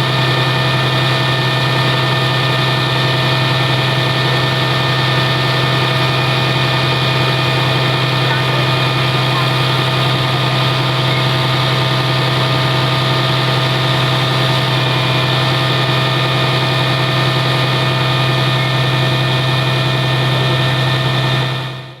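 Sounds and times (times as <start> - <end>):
engine idling: 0.0 - 22.0.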